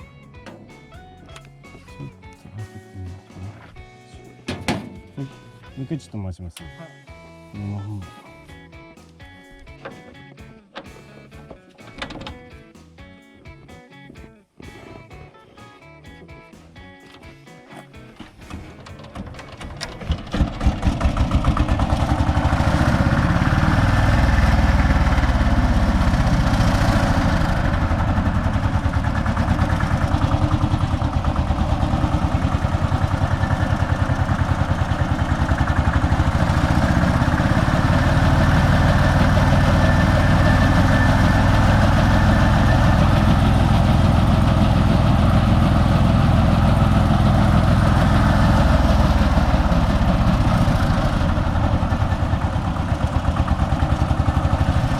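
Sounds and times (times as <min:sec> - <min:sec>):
rice thresher running: 0:18.2 - 0:54.9.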